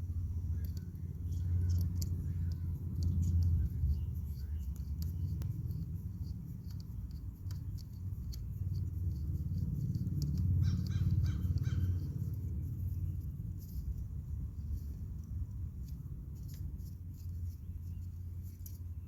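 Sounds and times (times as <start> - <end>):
low rumble: 0.0 - 19.0
small handling clicks: 0.5 - 12.4
crow cawing: 10.6 - 11.9.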